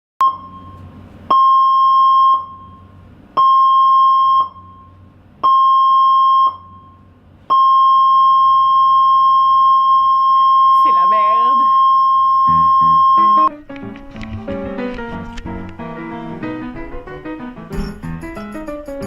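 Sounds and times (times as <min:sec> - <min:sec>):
high electronic alarm tone: 0:07.6 - 0:13.5.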